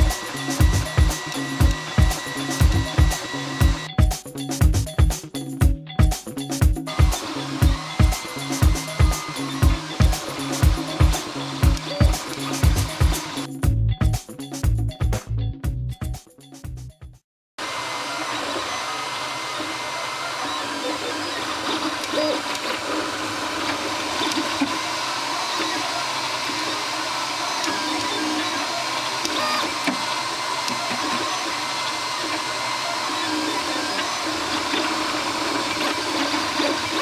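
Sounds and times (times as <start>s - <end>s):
stepper motor whine: 0.0s - 3.9s, 6.9s - 13.5s, 17.6s - 37.0s.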